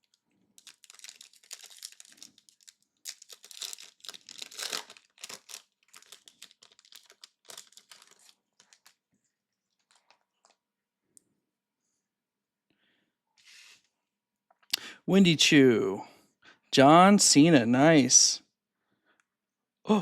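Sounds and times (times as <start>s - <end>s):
wrapper tearing and crinkling: 0.0s - 9.0s.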